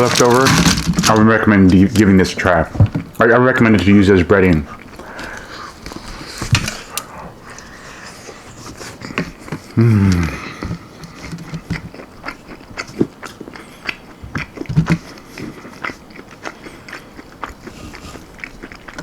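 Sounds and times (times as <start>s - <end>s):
crunchy chewing and biting: 4.7s - 19.0s
mouth sounds: 6.7s - 10.9s.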